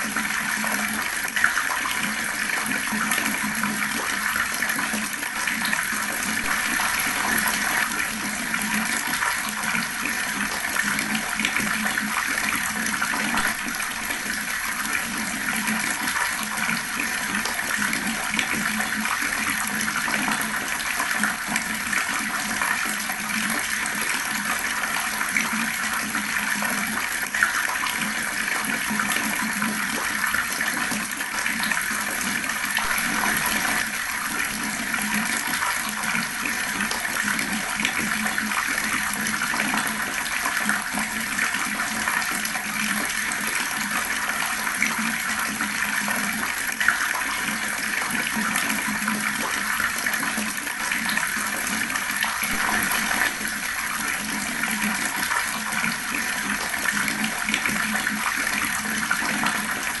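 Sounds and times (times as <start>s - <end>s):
fast-flowing water rushing: 4.2s - 23.8s, 30.9s - 49.0s, 49.7s - 60.0s.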